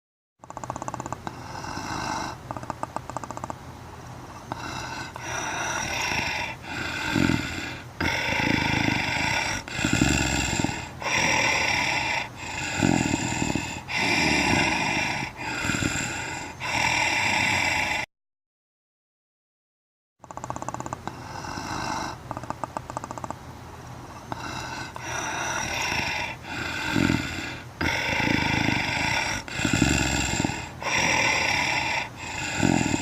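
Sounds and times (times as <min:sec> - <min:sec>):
creature growling: 0:04.5 - 0:18.1, 0:24.4 - 0:33.0.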